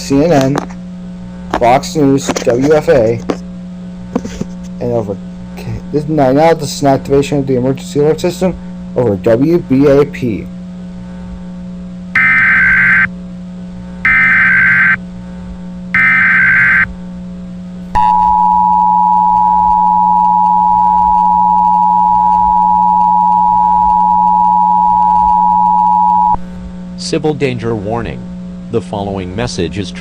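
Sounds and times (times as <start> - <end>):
two-tone attention beeping: 12.2 - 13.1, 14.1 - 15.0, 16.0 - 16.9, 18.0 - 26.4
warbling data tones: 12.2 - 13.1, 14.0 - 15.0, 15.9 - 16.9, 18.0 - 26.4.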